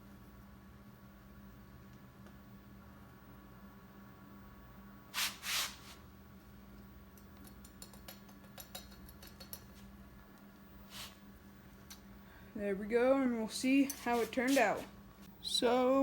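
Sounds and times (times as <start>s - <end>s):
faint steady hum: 0.0s - 5.2s, 6.0s - 16.0s.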